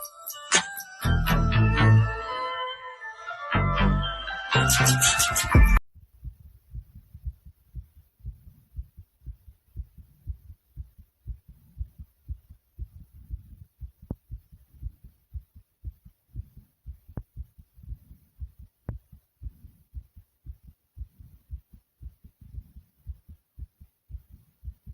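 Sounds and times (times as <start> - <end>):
fast heartbeat thumps: 5.5 - 24.9.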